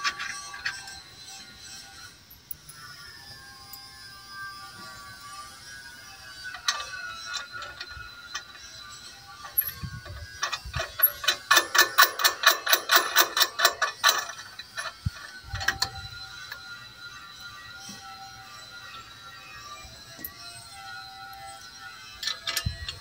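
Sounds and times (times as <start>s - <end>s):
ratchet wrench clicking: 6.4s - 19.3s.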